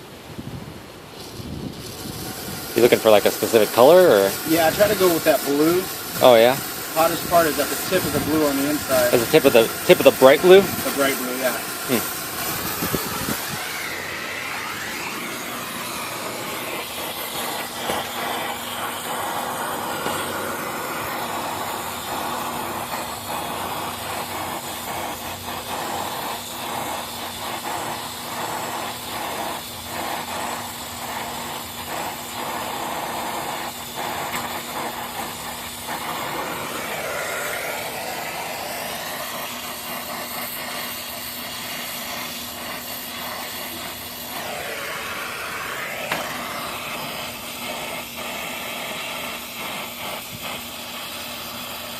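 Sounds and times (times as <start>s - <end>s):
torch flame hissing: 0.0s - 51.9s.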